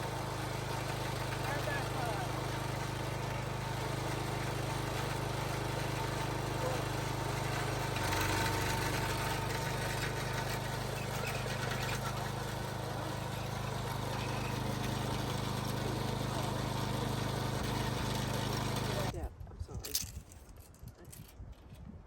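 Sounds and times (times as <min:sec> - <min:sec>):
auger engine running: 0:00.0 - 0:19.1.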